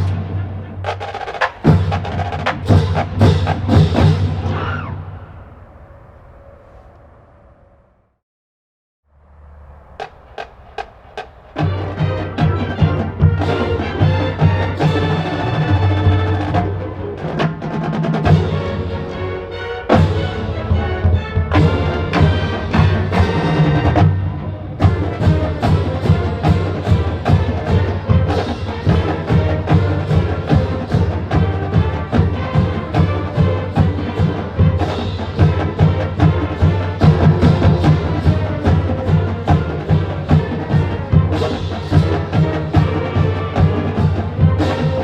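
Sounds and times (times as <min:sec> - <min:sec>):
drumline beat: 0:00.0 - 0:04.6, 0:10.0 - 0:19.2, 0:19.9 - 0:45.0
marching band playing: 0:00.0 - 0:05.2, 0:10.0 - 0:45.0.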